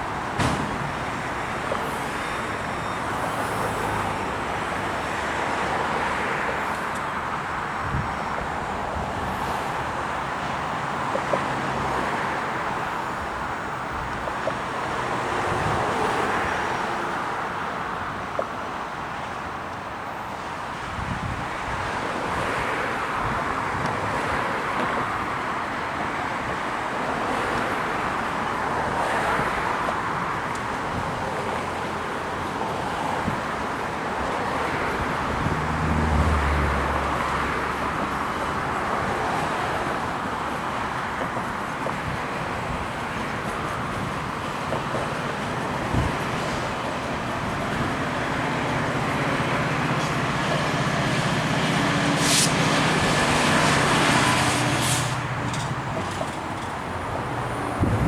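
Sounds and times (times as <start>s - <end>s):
train wheels rolling on rail: 0.0s - 58.0s
low locomotive engine hum: 26.9s - 58.0s.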